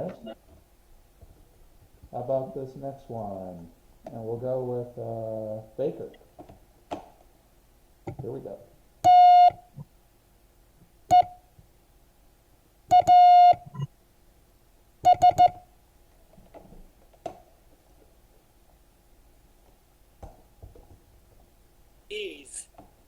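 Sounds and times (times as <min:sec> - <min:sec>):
morse code tone: 0:09.1 - 0:09.6, 0:12.9 - 0:13.9, 0:15.1 - 0:15.6.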